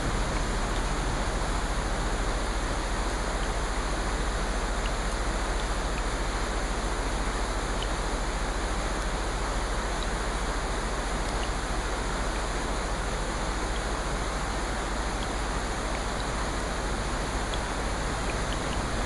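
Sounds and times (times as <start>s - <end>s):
rain hissing: 0.0s - 19.0s
faint light ticks: 4.8s - 6.9s, 7.6s - 9.2s, 9.9s - 10.5s, 11.2s - 12.9s, 13.7s - 13.9s, 15.1s - 16.4s, 17.4s - 19.0s.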